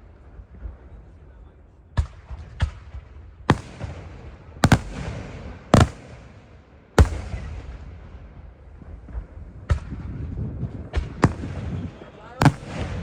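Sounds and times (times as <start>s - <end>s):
firework shells bursting: 4.6s - 6.4s, 12.4s - 13.0s.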